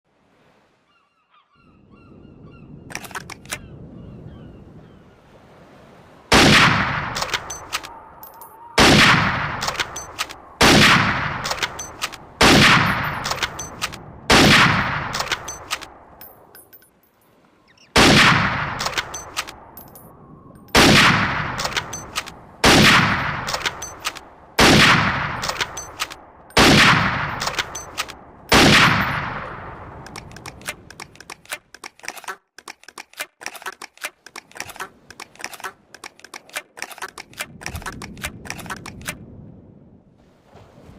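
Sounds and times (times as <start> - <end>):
rifle shots with echo: 8.8 - 10.0, 10.6 - 11.7, 12.4 - 13.5, 14.3 - 15.5, 18.0 - 19.1, 20.8 - 21.9, 22.6 - 23.8, 24.6 - 27.8, 28.5 - 29.6
short metallic clicks: 30.0 - 39.2.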